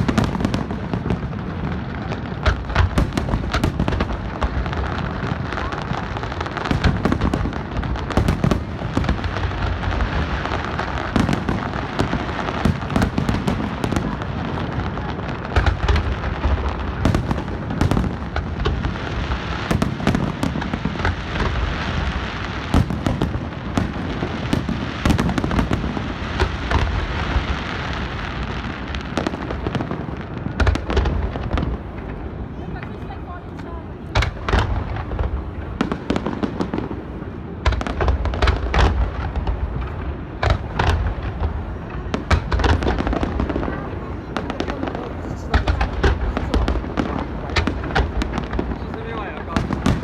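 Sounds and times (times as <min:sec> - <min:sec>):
fireworks bangs and crackles: 0:00.0 - 0:50.0.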